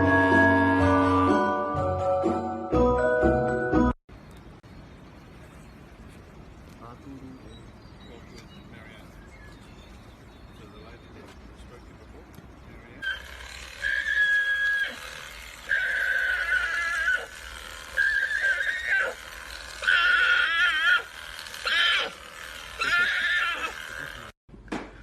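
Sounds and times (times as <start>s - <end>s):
animal high-pitched calls: 13.0s - 24.3s.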